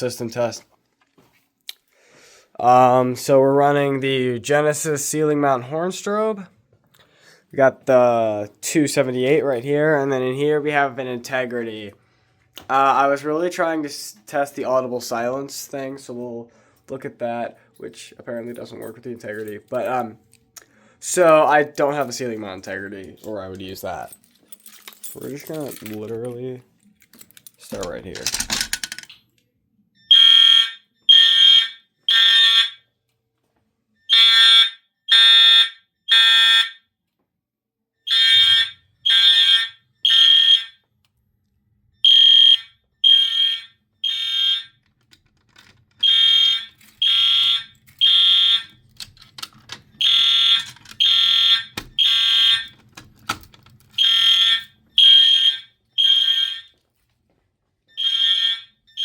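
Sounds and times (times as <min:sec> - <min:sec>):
fire alarm horn beeping: 0:30.0 - 0:32.9, 0:34.0 - 0:36.9, 0:38.0 - 0:40.8, 0:41.9 - 0:44.8, 0:46.0 - 0:48.8, 0:49.9 - 0:52.8, 0:54.0 - 0:56.8, 0:57.9 - 0:59.0.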